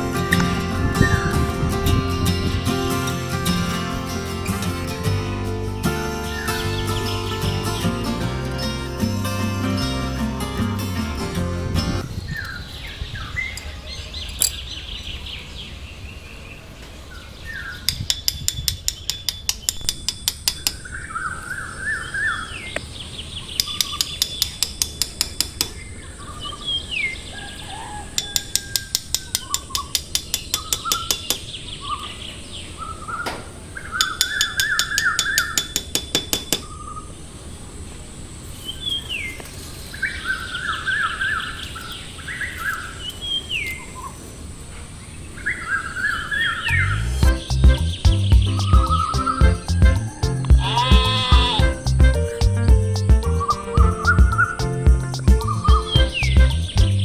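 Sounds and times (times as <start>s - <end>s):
birds chirping and calling: 5.8s - 8.0s, 12.0s - 37.2s, 45.0s - 57.0s
sharp clicking notes: 46.7s - 57.0s.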